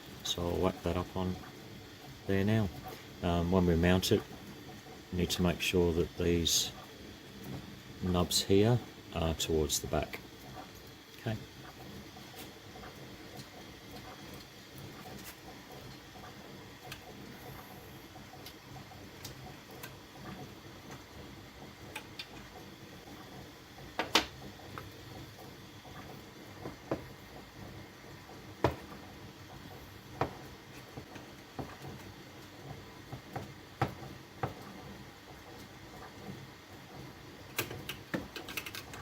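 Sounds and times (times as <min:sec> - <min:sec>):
plastic parts clicking and knocking: 0:24.0 - 0:24.4, 0:37.5 - 0:39.0.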